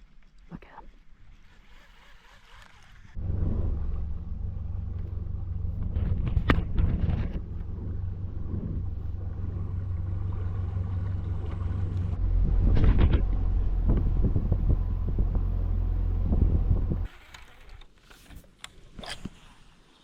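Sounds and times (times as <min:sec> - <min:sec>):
boat motor humming: 0:01.3 - 0:17.1.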